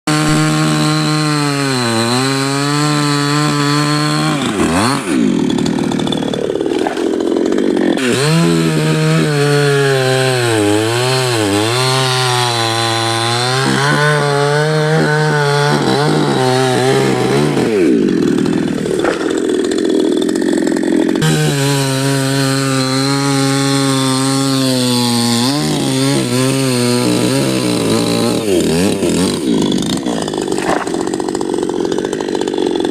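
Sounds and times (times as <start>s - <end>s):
chainsaw cutting wood: 0.0s - 32.9s.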